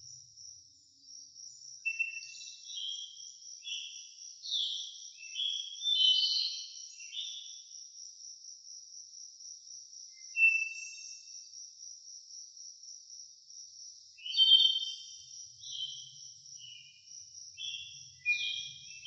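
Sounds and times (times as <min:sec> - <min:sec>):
cricket trilling: 0:00.0 - 0:19.0
songbird singing: 0:00.0 - 0:19.0.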